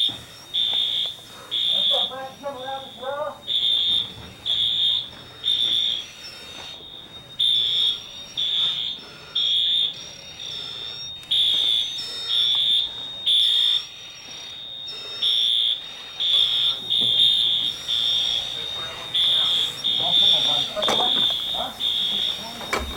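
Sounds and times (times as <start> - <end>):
continuous high tone: 0.0 - 22.9
fire alarm beeps: 0.0 - 22.9.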